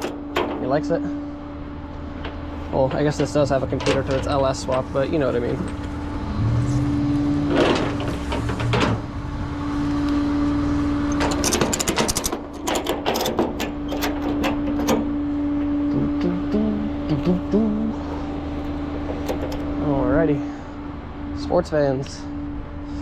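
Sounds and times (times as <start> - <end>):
metallic clicks and clanks: 0.0 - 1.1, 2.2 - 6.0, 7.5 - 9.0, 11.1 - 15.7, 18.1 - 19.9
vehicle engine humming: 0.0 - 23.0.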